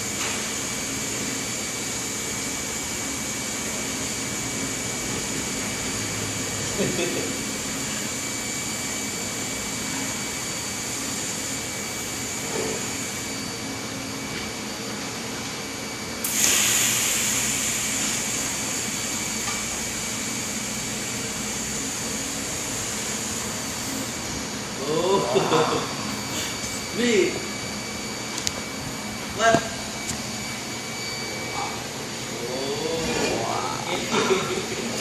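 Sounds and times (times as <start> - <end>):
welding hiss: 16.2 - 23.9
faint high whine: 24.8 - 34.5.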